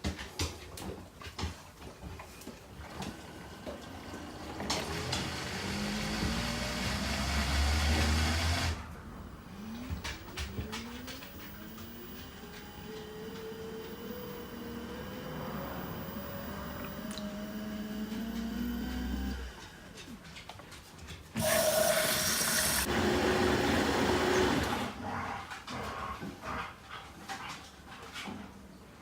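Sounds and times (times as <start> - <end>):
dishwasher motor hum and whine: 2.2 - 20.2, 21.4 - 25.0.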